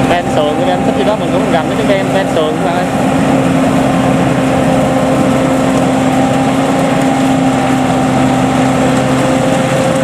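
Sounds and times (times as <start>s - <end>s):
harvester engine running: 0.0s - 10.0s.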